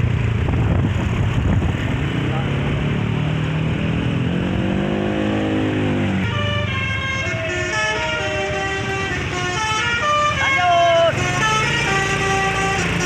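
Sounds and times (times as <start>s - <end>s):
musical air horn tune: 6.2s - 13.0s.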